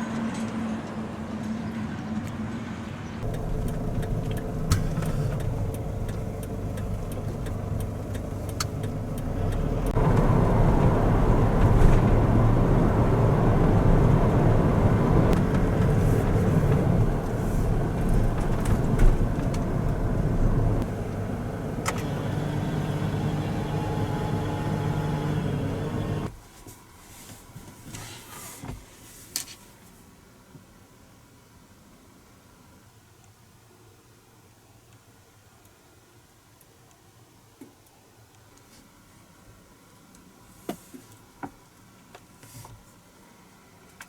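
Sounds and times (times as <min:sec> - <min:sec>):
road noise: 0:00.0 - 0:26.4
van engine hum: 0:00.0 - 0:26.5.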